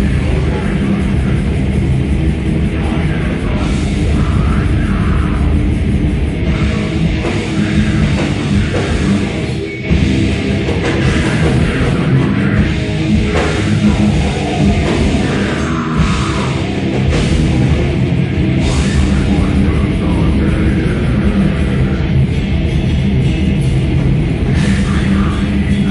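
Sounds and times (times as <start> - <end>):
heavy metal band playing live: 0.0 - 25.9.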